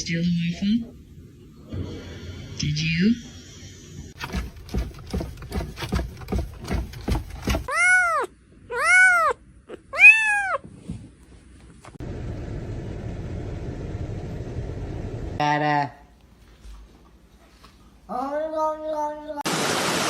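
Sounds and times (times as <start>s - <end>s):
quick regular taps: 4.2s - 7.7s
cat meowing: 7.7s - 10.6s.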